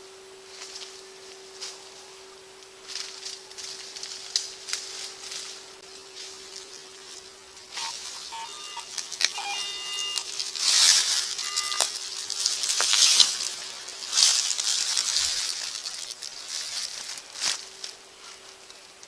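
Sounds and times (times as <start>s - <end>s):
scratchy rustles in leaf litter: 2.8s - 19.0s
metal detector beeps: 7.7s - 12.0s.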